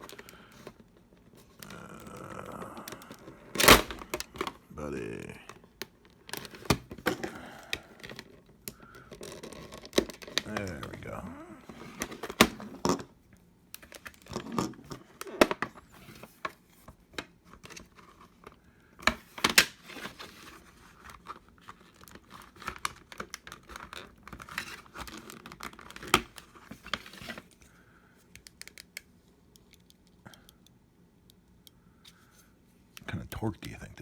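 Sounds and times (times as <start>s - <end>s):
packaging being torn and crinkled: 1.6s - 4.4s, 21.1s - 27.5s.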